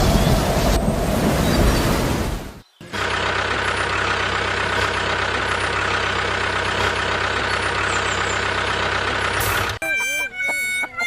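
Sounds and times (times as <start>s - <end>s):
engine idling: 2.8s - 9.8s.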